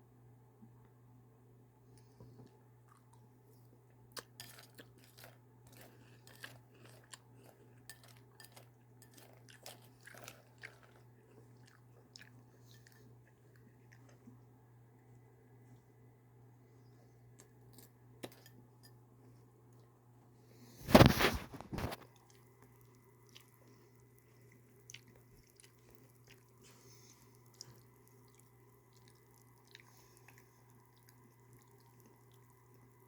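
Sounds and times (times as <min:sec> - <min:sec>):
person chewing crunchy cereal: 0:02.9 - 0:14.4, 0:20.9 - 0:33.0.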